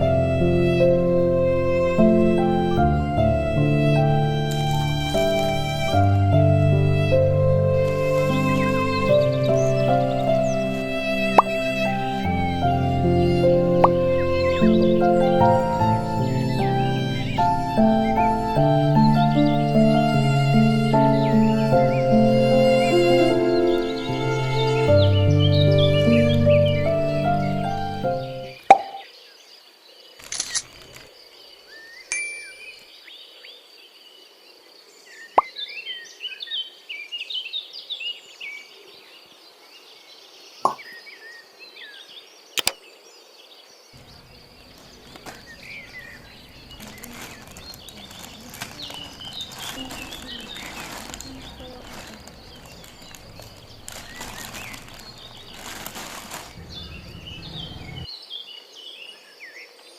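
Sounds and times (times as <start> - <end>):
small birds chirping: 7.2 - 59.9
sharp clicks: 30.2 - 31.0, 42.6 - 42.8.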